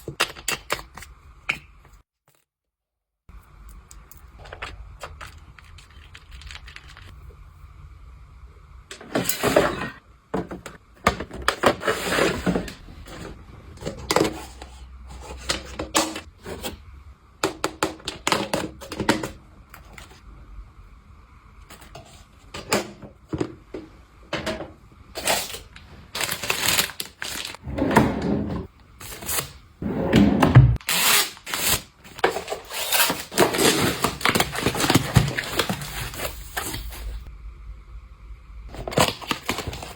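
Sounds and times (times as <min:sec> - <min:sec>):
packaging rustling: 0:25.2 - 0:27.6, 0:30.9 - 0:37.3, 0:38.7 - 0:39.9.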